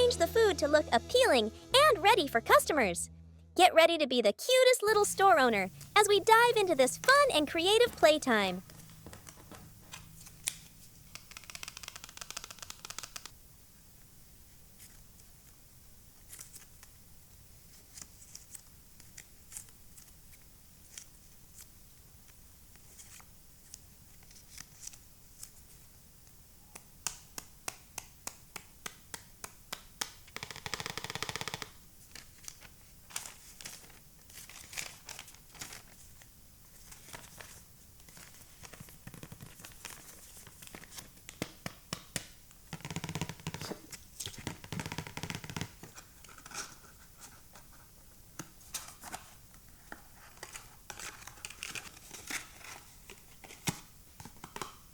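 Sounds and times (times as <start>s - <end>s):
short buzzing tone: 0.6s - 3.6s
plastic toy pieces clicking: 11.2s - 13.3s.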